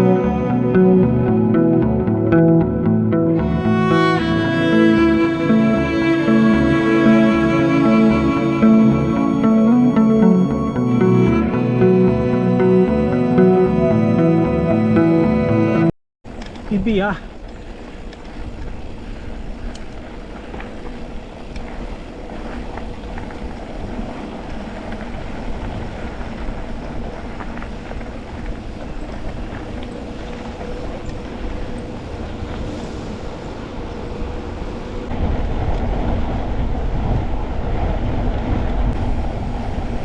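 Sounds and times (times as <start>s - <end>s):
bike tyres rolling on dirt: 16.3s - 36.6s
wind buffeting microphone: 16.5s - 40.0s.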